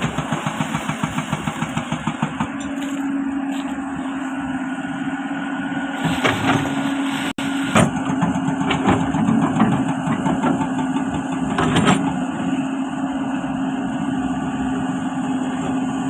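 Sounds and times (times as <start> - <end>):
machine knocks and clanks: 0.0 - 2.9, 7.7 - 12.2
excavator diesel engine drone: 0.0 - 16.0.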